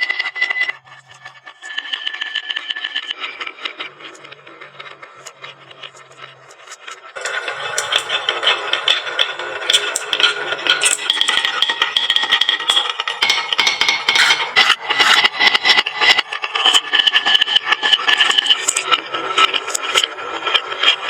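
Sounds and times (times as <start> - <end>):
marbles rattling down wooden run: 7.2 - 15.5.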